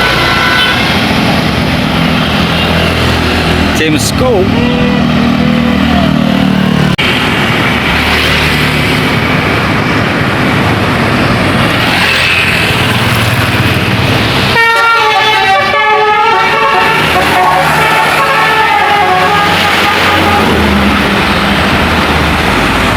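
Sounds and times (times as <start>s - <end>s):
multi-tone musical horn: 0.0s - 1.0s, 14.6s - 20.8s
bus engine and road noise: 0.0s - 22.9s.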